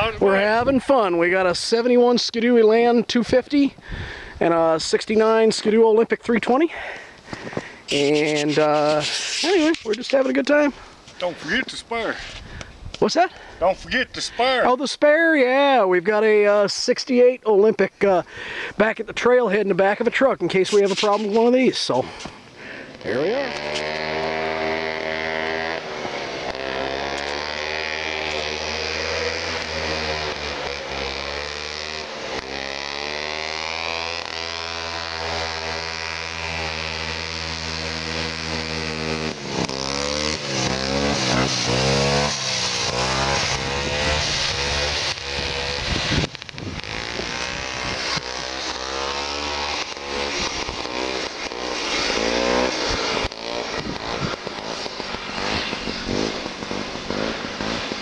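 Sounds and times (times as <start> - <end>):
snowmobile engine revving: 0.0 - 13.3, 13.9 - 58.0.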